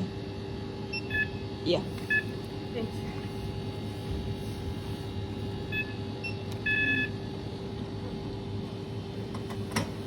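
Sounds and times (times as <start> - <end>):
steady store hum: 0.0 - 10.0
checkout scanner beeping: 0.9 - 1.4, 2.1 - 2.4, 5.6 - 7.3.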